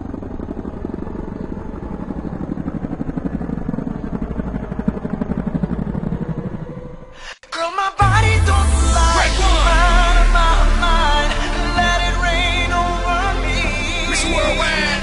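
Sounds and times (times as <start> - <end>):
machine running with fast throb: 8.0 - 15.0.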